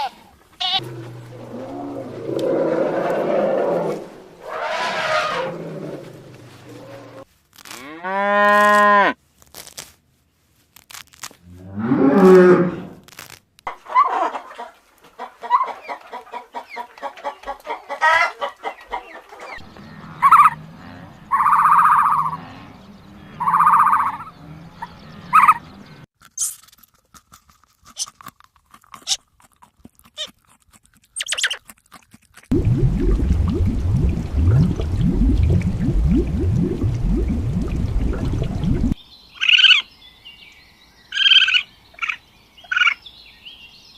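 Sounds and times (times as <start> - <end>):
chickens clucking and calling: 13.8 - 20.6.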